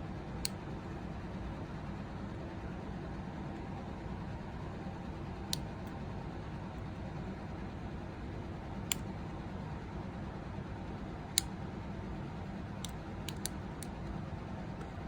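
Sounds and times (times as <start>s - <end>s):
steady background hum: 0.0s - 15.0s
keyboard switch parts clicking: 12.8s - 13.6s.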